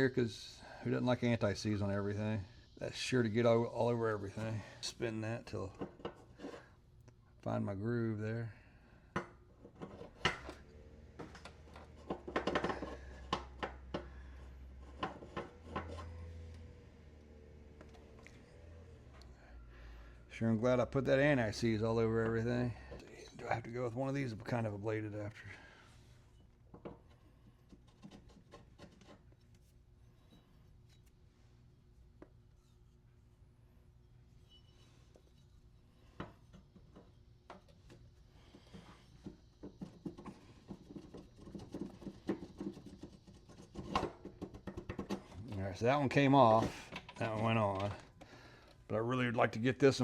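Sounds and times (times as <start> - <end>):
low steady hum: 0.0 - 50.0
parts being handled: 9.1 - 19.4, 25.2 - 48.9.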